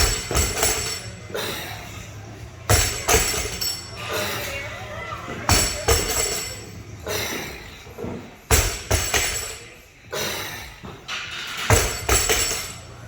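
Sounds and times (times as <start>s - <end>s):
barbell clanking: 0.0s - 1.6s, 2.7s - 4.4s, 11.1s - 12.9s.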